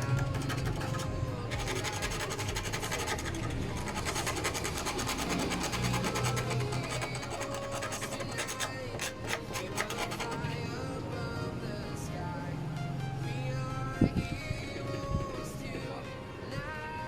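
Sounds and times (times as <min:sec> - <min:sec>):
rapid scratching and scraping: 0:00.0 - 0:10.9
quiet background music: 0:00.0 - 0:17.0.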